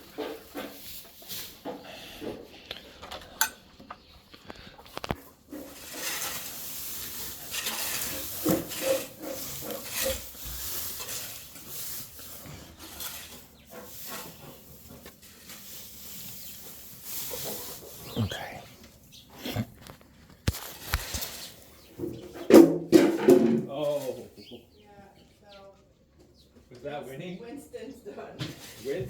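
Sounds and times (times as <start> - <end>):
dry hay rustling and crackling: 0.0 - 3.0, 3.6 - 21.9.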